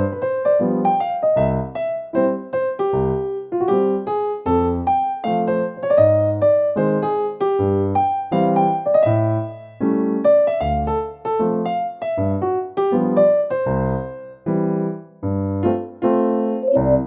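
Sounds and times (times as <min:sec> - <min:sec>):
bouncy piano melody: 0:00.0 - 0:17.0
bass line: 0:16.7 - 0:17.0.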